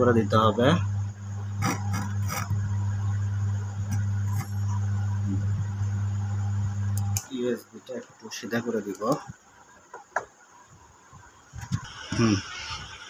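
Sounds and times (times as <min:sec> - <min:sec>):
amplifier mains hum: 0:00.0 - 0:13.0.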